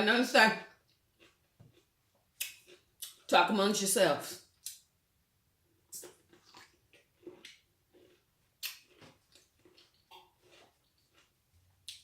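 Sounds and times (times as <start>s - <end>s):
pickle crunching: 5.9s - 12.0s
wet mouth smacks: 8.6s - 8.9s.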